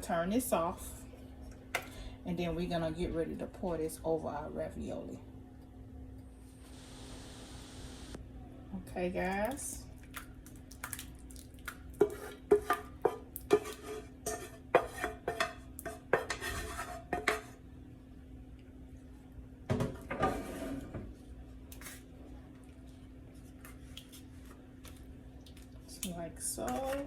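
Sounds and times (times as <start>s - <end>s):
utensil clanking against a pot: 12.0s - 17.6s.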